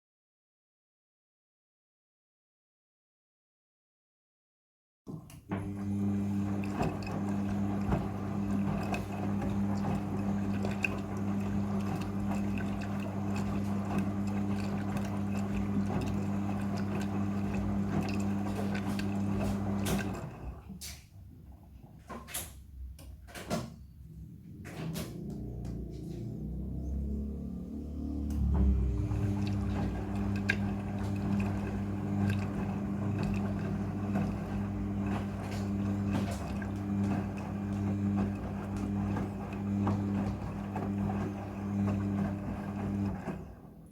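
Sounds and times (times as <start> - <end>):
washing machine pump humming: 5.3 - 43.9
water splashing in drum: 6.6 - 20.3, 28.2 - 43.3.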